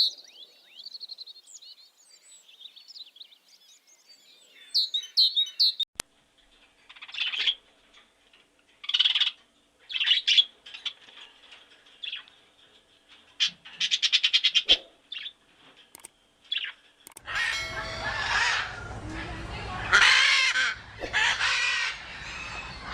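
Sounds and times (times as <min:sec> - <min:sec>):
songbird rattling calls and trill: 0:06.6 - 0:08.0, 0:08.8 - 0:22.9.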